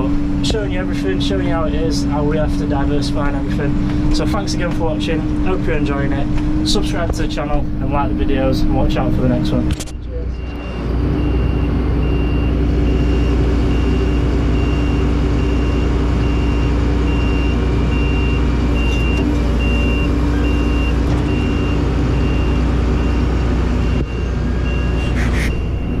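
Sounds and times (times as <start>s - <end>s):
vehicle engine running: 0.0s - 26.0s
electronic warning beep: 9.7s - 26.0s.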